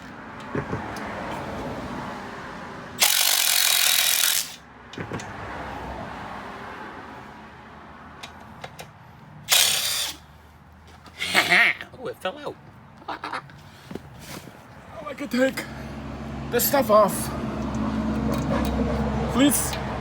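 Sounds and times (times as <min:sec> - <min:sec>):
ratchet clicking: 0:03.0 - 0:04.6, 0:09.5 - 0:10.2.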